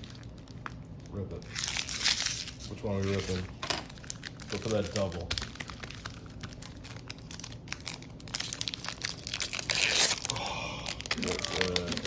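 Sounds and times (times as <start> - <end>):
foil wrapper crinkling and tearing: 0.0 - 12.0.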